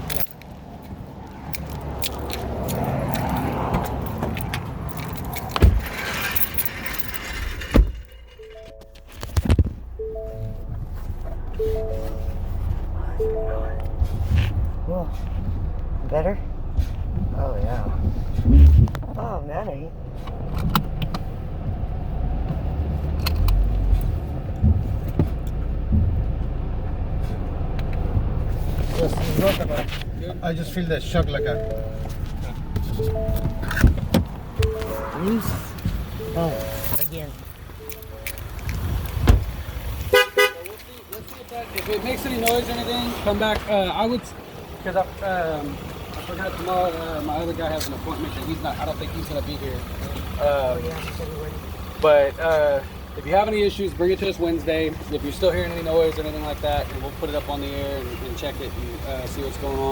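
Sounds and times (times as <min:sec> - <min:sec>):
keys jingling and rattling: 0:00.0 - 0:00.6, 0:01.5 - 0:09.2, 0:36.5 - 0:39.2
car engine and road noise: 0:00.0 - 0:59.9
loud thumps: 0:05.5 - 0:09.9, 0:18.0 - 0:19.2, 0:24.6 - 0:26.7.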